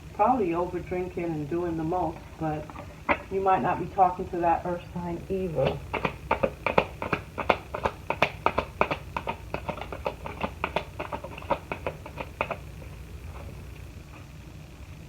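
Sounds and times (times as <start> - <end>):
cards tapping and slapping on table: 5.6 - 13.6.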